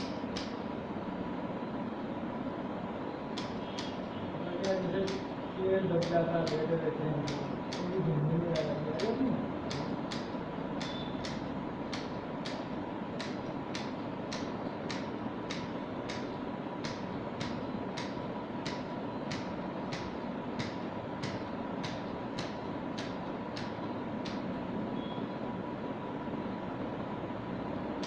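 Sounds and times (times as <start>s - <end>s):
steady fan-like hiss: 0.0s - 28.0s
regular mechanical ticking: 3.3s - 24.5s.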